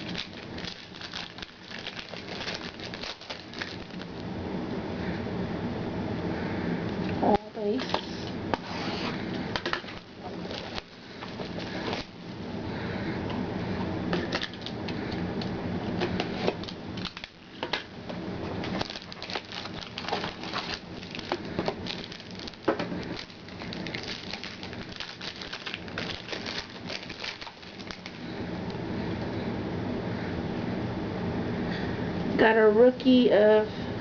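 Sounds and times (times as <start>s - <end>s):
wrapper rustling: 0.0s - 4.2s, 9.7s - 12.4s, 16.1s - 17.8s, 18.6s - 28.2s
steady low hum: 0.0s - 34.0s.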